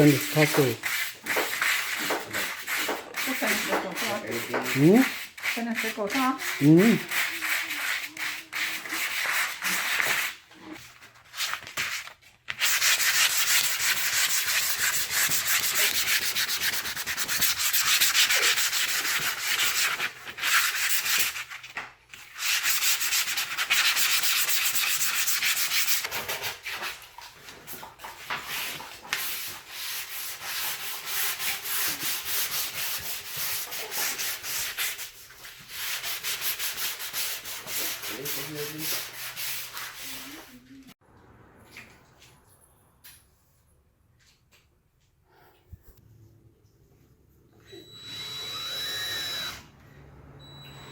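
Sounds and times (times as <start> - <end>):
sandpaper rasping on wood: 0.0 - 10.4, 12.6 - 21.5, 22.3 - 26.9, 28.5 - 40.6.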